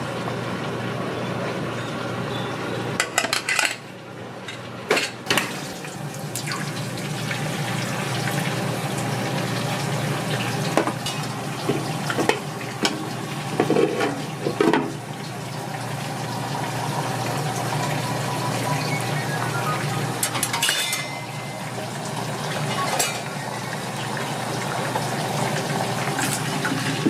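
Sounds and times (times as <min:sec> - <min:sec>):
kitchen equipment hum: 0:00.0 - 0:27.0
utensils clanking on pans: 0:03.0 - 0:03.9, 0:04.5 - 0:05.6, 0:10.7 - 0:15.0, 0:20.2 - 0:23.6.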